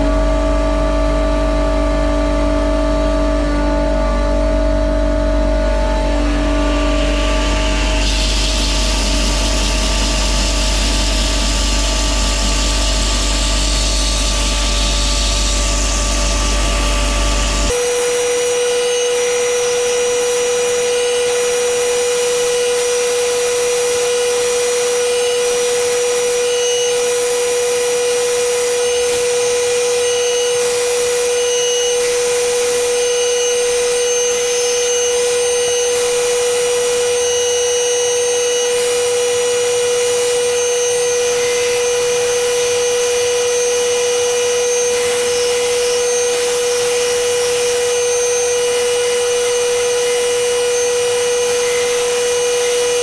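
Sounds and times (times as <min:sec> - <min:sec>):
belt grinder whining: 0:17.7 - 0:53.0.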